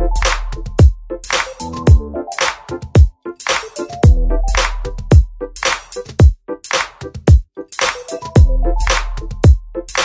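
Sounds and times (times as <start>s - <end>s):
drum machine beat: 0.0s - 10.0s.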